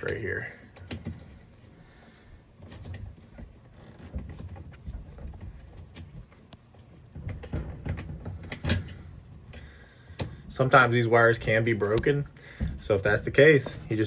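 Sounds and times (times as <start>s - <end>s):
low rumbling handling noise: 0.0s - 14.0s
plastic parts clicking and rattling: 0.0s - 14.0s.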